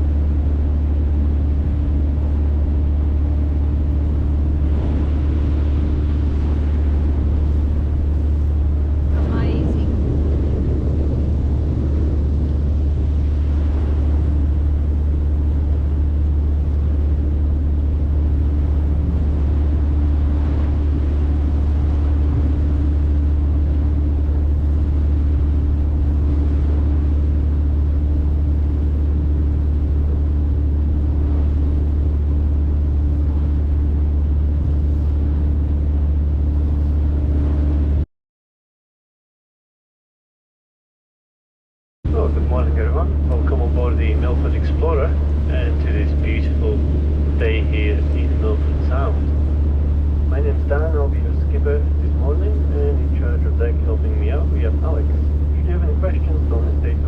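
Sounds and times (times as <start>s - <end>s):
boat engine drone: 0.0s - 38.0s, 42.1s - 57.0s
steady hum: 0.0s - 38.0s, 42.1s - 57.0s.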